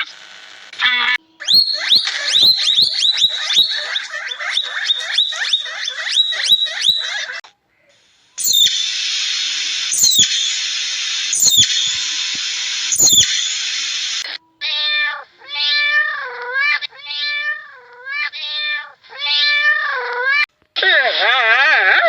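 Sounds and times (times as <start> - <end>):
steady hiss: 7.7 - 15.5
sharp clicks: 8.4 - 14.4
cat meowing: 14.6 - 20.4.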